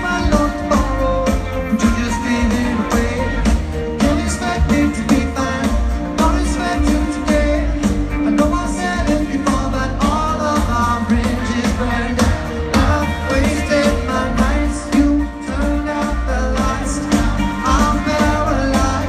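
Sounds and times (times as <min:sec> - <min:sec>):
lead vocal singing: 0:00.0 - 0:19.0
live pop-rock band playing: 0:00.0 - 0:19.0.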